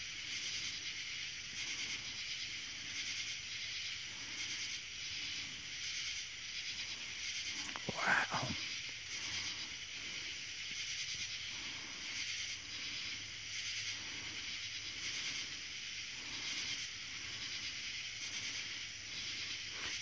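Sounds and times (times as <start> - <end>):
night insects buzzing: 0.0 - 20.0.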